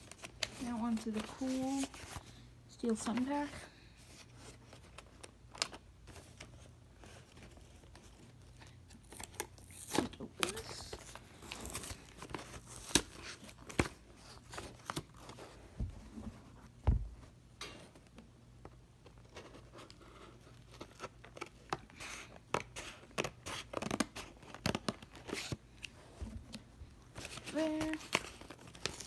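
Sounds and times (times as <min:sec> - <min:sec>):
thump: 0:16.8 - 0:17.3
packaging snips and crinkles: 0:27.2 - 0:29.0.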